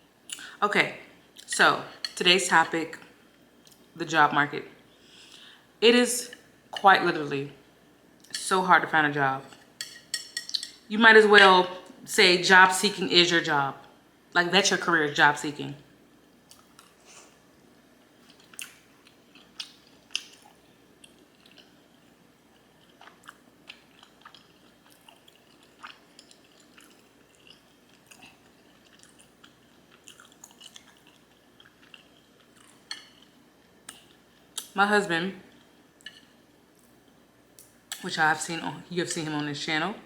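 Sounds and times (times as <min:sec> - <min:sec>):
person chewing and smacking: 0:16.5 - 0:17.1, 0:18.2 - 0:34.7.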